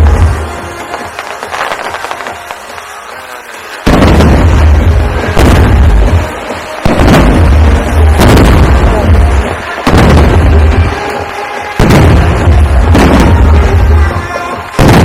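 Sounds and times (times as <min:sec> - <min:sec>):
rumbling crackling firework tail: 0:00.0 - 0:03.0, 0:03.8 - 0:11.1, 0:11.7 - 0:15.0
firework shells booming: 0:03.8 - 0:11.1, 0:11.8 - 0:15.0.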